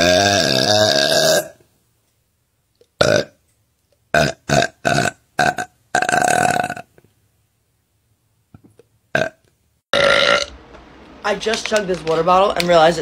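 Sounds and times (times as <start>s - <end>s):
woman burping: 0.0s - 1.6s, 4.2s - 6.9s, 9.1s - 10.5s.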